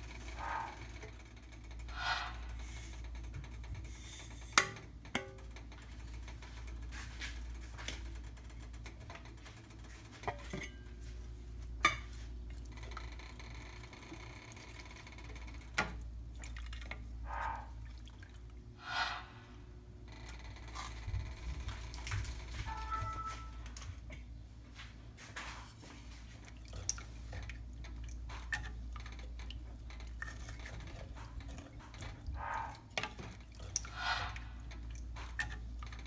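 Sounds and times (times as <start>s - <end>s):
low hum: 0.0s - 32.9s
utensils clinking on cookware: 10.2s - 11.0s.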